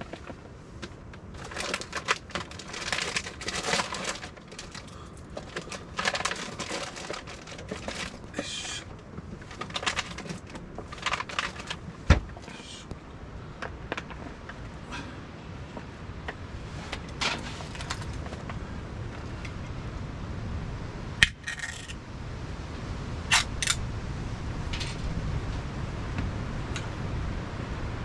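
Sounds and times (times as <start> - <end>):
rustling and crinkling: 0.0 - 19.8.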